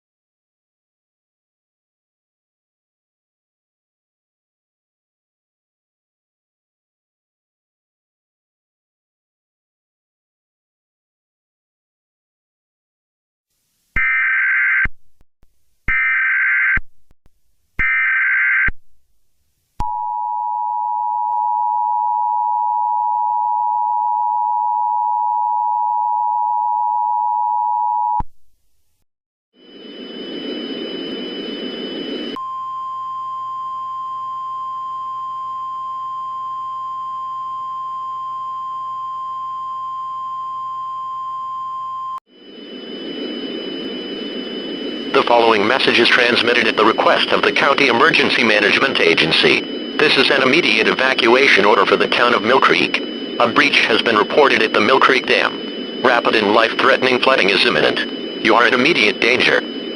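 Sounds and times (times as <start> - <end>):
low hum: 29.6 - 59.9
steady tone: 29.6 - 59.9
two-tone attention signal: 43.7 - 59.9
burst of static: 44.8 - 59.9
screeching data bursts: 45.1 - 59.9.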